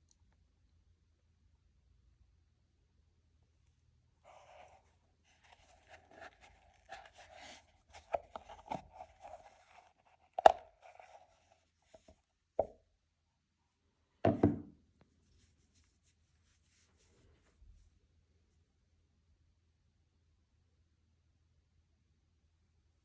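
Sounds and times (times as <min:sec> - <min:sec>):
packaging rustling and scraping: 0:04.3 - 0:12.1.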